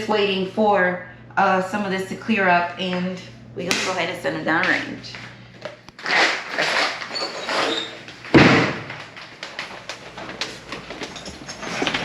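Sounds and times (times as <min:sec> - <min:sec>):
heavy bang: 0:08.3 - 0:09.0.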